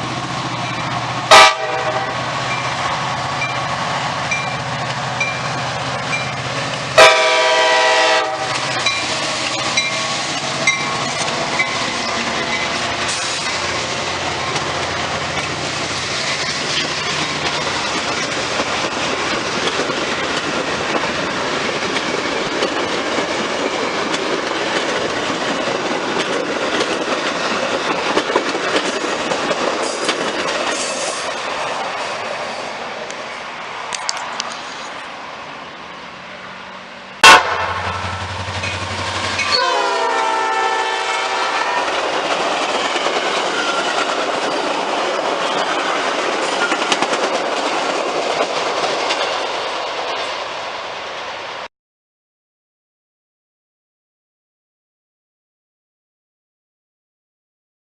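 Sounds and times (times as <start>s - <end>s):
locomotive horn: 1.3s - 2.3s, 7.0s - 10.3s, 37.2s - 42.0s
train wheels clattering over rails: 8.4s - 32.5s, 41.8s - 50.5s.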